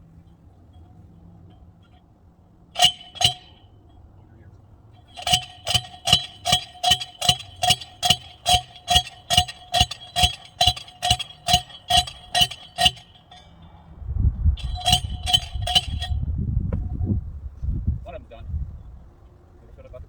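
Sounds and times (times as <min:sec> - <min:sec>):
metal striking metal: 0:02.8 - 0:03.9, 0:05.0 - 0:13.9, 0:14.6 - 0:16.2
wind on microphone: 0:13.9 - 0:20.0.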